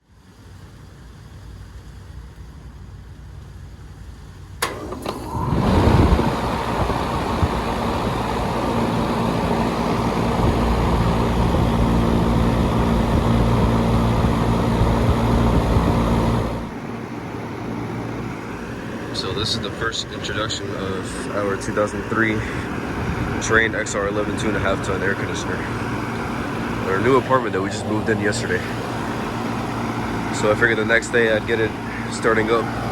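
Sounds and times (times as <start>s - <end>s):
air conditioner humming: 2.2s - 32.9s
contactor click: 4.6s - 7.2s.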